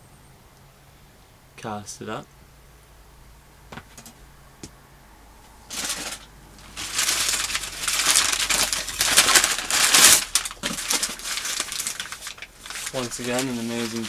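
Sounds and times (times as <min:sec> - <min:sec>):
packaging crinkling and rustling: 0:05.7 - 0:14.0.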